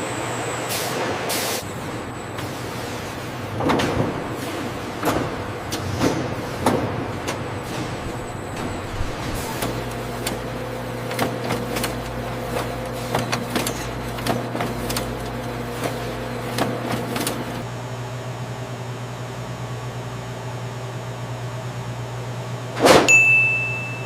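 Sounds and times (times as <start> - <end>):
factory machinery hum: 0.0 - 24.0
machinery clicks and clanks: 1.6 - 17.7.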